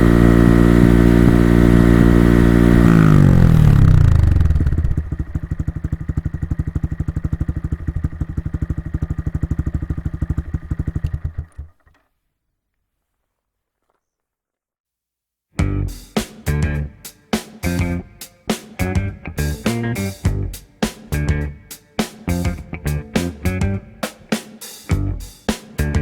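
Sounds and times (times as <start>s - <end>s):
motorcycle engine revving and idling: 0.0s - 12.0s.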